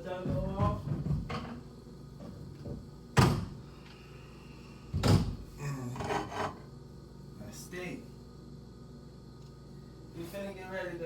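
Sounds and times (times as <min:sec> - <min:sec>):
loud knocks in a kitchen: 0:00.1 - 0:01.6, 0:02.5 - 0:03.6, 0:04.9 - 0:05.4.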